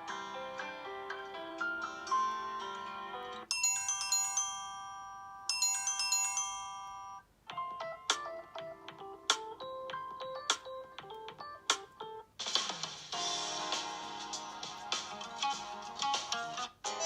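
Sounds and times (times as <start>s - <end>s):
phone ringtone melodies: 1.8s - 12.3s.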